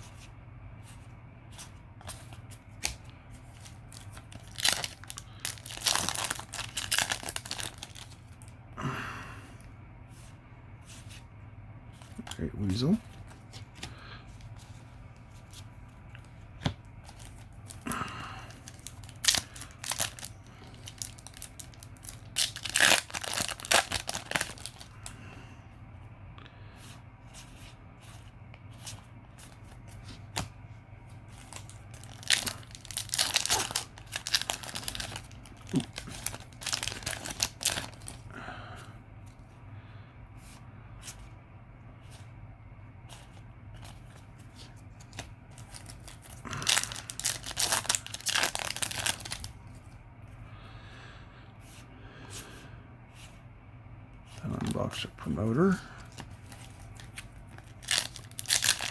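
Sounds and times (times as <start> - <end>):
foil wrappers tearing and crinkling: 3.6 - 8.1, 18.5 - 25.1, 31.4 - 38.2, 45.0 - 49.5, 56.0 - 58.9.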